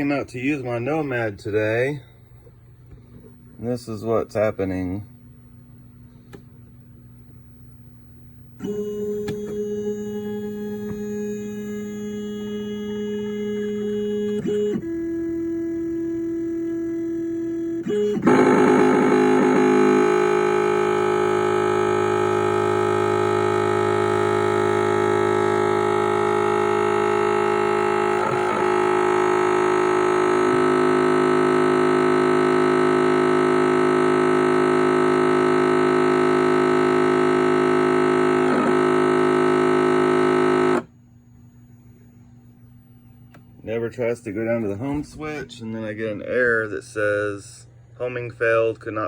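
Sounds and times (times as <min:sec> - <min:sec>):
stepper motors whining: 0:08.5 - 0:45.6.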